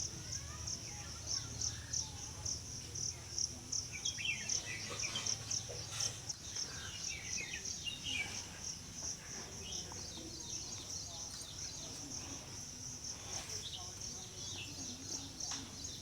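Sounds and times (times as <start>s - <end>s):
insects chirring: 0.0s - 16.0s
birds chirping: 3.8s - 16.0s.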